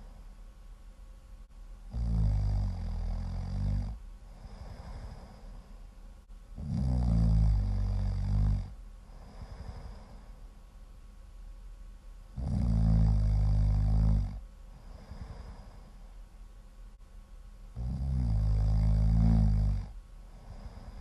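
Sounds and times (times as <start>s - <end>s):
quiet breathing: 0.0s - 0.7s, 1.4s - 11.0s, 12.3s - 17.1s, 17.7s - 21.0s
loud snoring: 1.9s - 5.6s, 6.6s - 10.3s, 12.4s - 15.9s, 17.8s - 21.0s.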